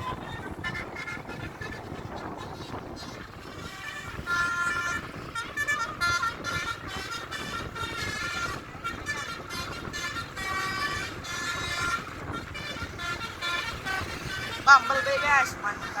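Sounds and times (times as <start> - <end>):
bus multi-tone horn tune: 0.0 - 16.0
traffic rumble: 0.0 - 16.0.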